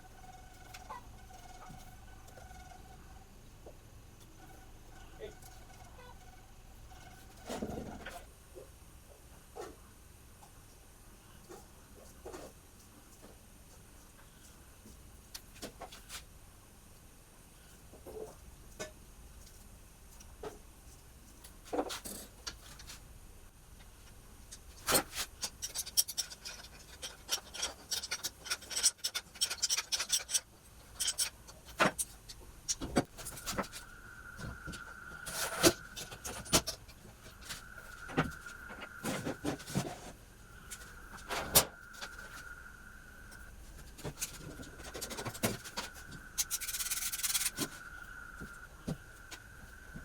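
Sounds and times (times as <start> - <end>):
faint high whine: 0.0 - 8.7, 23.4 - 50.0.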